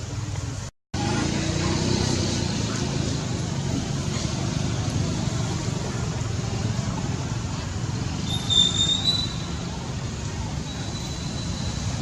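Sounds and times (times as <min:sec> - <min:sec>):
baby monkey squealing: 0:08.3 - 0:09.5.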